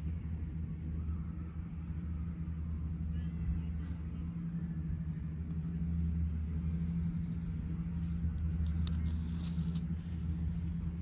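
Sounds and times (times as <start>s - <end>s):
steady low hum: 0.0s - 11.0s
cards being flipped: 8.6s - 9.9s.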